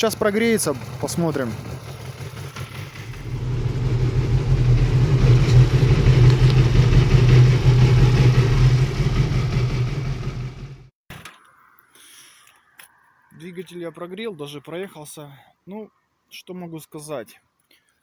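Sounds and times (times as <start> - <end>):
motorcycle engine idling: 0.0 - 10.9.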